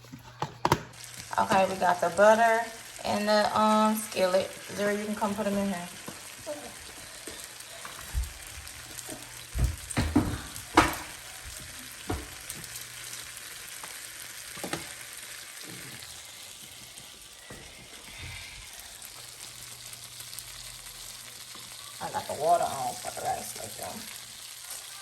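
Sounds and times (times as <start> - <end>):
butter sizzling in a skillet: 0.6 - 25.0.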